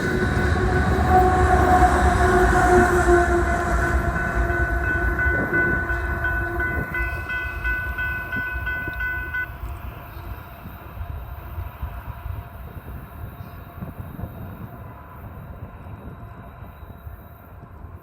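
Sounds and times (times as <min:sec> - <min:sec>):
steady tones: 0:00.0 - 0:09.6
pulsing high ringing: 0:00.0 - 0:10.6
freight train rumbling past: 0:00.0 - 0:18.0.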